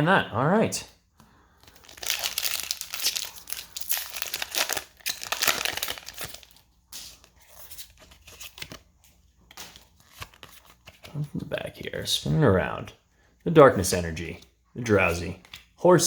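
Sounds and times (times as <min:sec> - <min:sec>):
cards rustling: 0:01.5 - 0:11.2
foil wrapper crinkling and tearing: 0:01.7 - 0:06.7.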